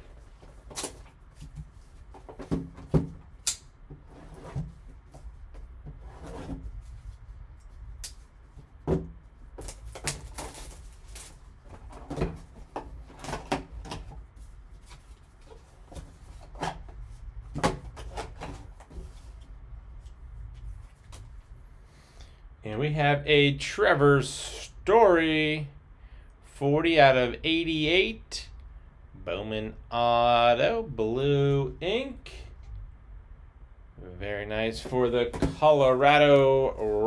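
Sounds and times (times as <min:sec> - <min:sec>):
rustling and scraping of card box: 0:00.0 - 0:03.4, 0:04.0 - 0:07.9, 0:09.6 - 0:22.2, 0:34.7 - 0:37.0.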